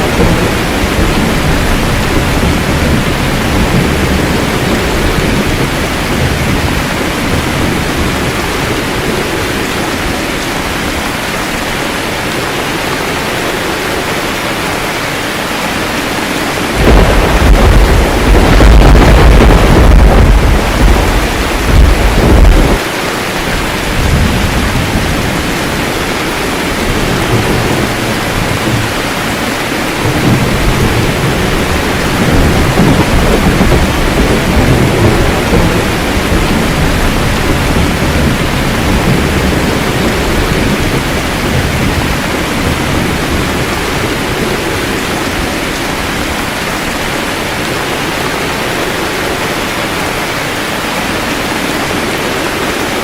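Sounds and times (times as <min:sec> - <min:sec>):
heavy rain hissing: 0:00.0 - 0:53.0
rolling thunder rumble: 0:00.0 - 0:53.0.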